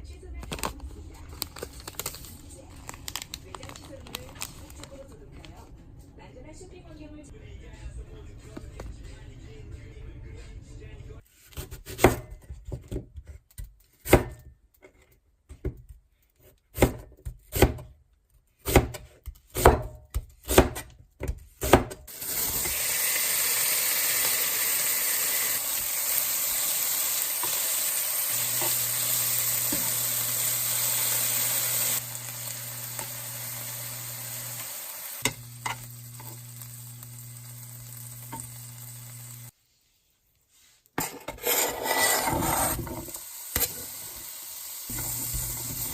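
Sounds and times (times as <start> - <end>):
food sizzling in a pan: 22.1 - 39.6, 41.8 - 45.9
knife on cutting board: 41.0 - 43.0.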